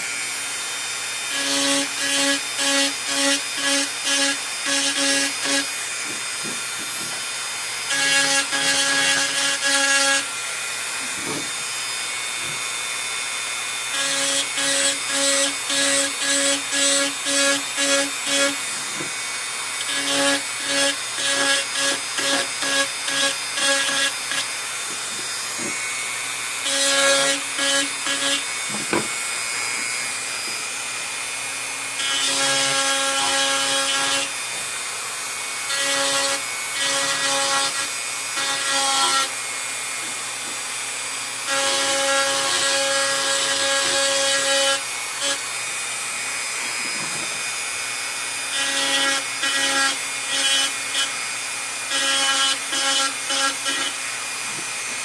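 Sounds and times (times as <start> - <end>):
power tool motor running: 0.0 - 55.0
grinding: 13.8 - 30.9.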